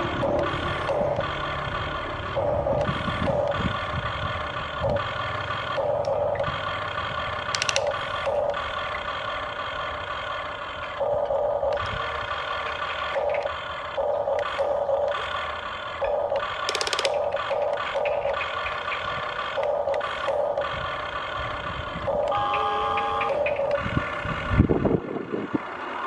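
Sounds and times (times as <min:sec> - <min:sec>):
electric motors whining: 0:00.0 - 0:26.0
low motor hum: 0:00.0 - 0:26.0
clicking rattle: 0:02.7 - 0:10.0, 0:10.8 - 0:21.1.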